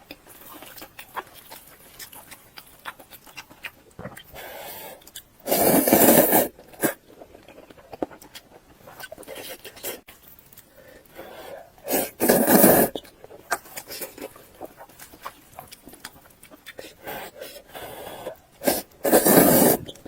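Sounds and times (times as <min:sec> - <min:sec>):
soft chewing: 0:00.0 - 0:20.0
loud rushing mouth noise: 0:05.5 - 0:07.0, 0:11.9 - 0:12.9, 0:18.6 - 0:20.0
mouth clicks: 0:11.8 - 0:20.0.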